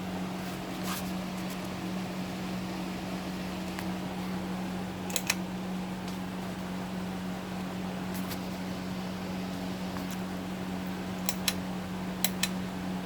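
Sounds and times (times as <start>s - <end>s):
ceiling fan motor humming: 0.0s - 13.0s
sharp clicks: 5.1s - 5.4s, 11.2s - 11.6s, 12.2s - 12.6s.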